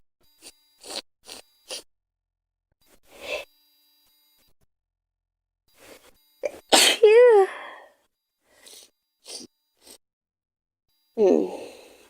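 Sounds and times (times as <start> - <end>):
girl sniffing inhalations: 8.5 - 10.0.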